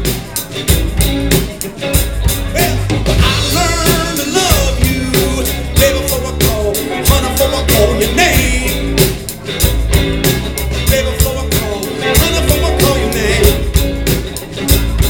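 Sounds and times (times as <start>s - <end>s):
blues band playing: 0.0s - 15.0s
guitar: 0.0s - 15.0s
steady drum beat: 0.0s - 15.0s
person singing: 2.3s - 9.4s, 10.5s - 15.0s.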